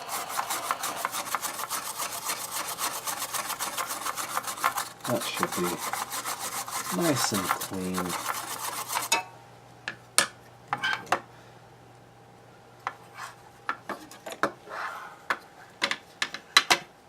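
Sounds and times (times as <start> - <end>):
rasping scrubbing on circuit board: 0.0 - 9.1.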